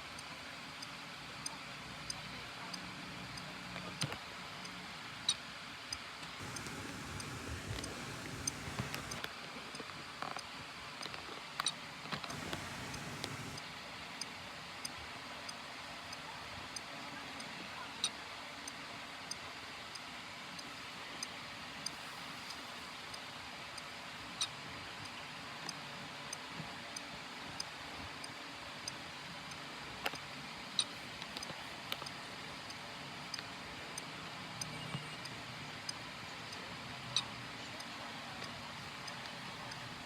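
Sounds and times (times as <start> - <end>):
faint hiss: 0.0 - 10.8, 11.7 - 40.0
sharp irregular clicks: 2.0 - 9.3, 11.0 - 13.6, 29.5 - 36.0.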